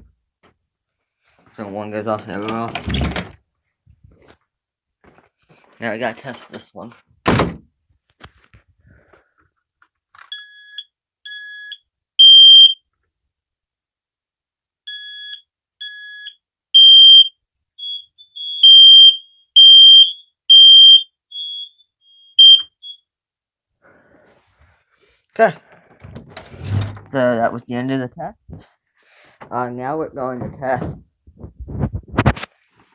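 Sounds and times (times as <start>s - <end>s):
smoke alarm beeps: 10.3s - 12.8s, 14.9s - 23.0s
faint second alarm beeps: 14.9s - 23.0s.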